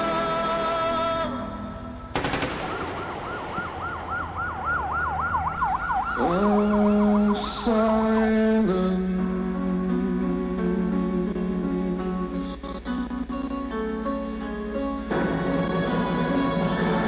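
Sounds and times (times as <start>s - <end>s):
sharp crack: 2.2s - 4.4s
siren yelping: 2.9s - 8.4s.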